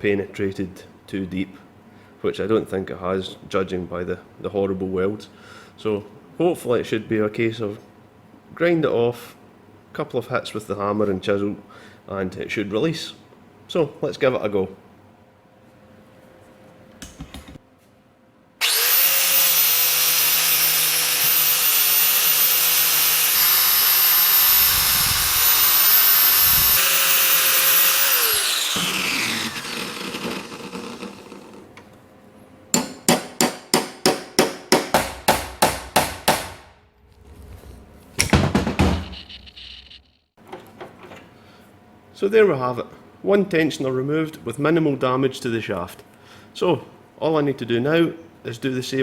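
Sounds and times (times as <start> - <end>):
angle grinder on steel: 18.6 - 31.7
hammer striking chisel: 32.7 - 36.7.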